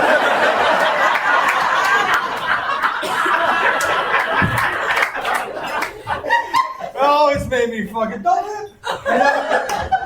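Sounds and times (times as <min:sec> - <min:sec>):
people laughing: 0:00.0 - 0:07.4, 0:08.8 - 0:10.0.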